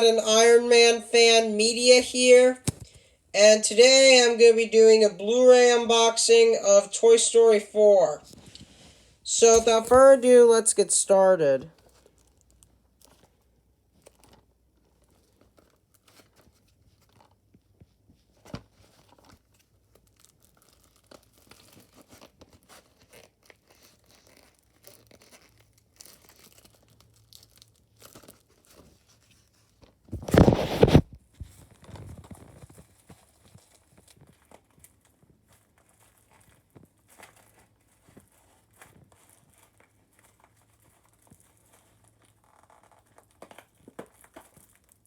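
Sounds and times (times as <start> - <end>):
plastic wrap tearing: 11.6 - 17.5, 18.4 - 45.0
plastic wrap crinkling: 11.6 - 45.0.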